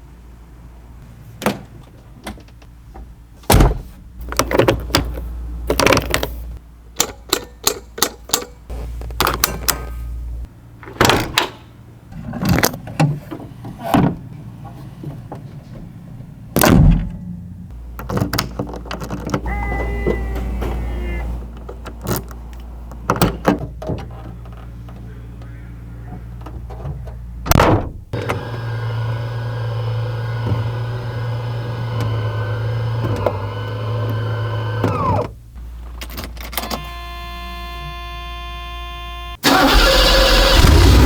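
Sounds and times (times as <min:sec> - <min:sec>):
heavy car door thunks: 0:03.4 - 0:04.1, 0:16.6 - 0:17.2, 0:26.9 - 0:28.3.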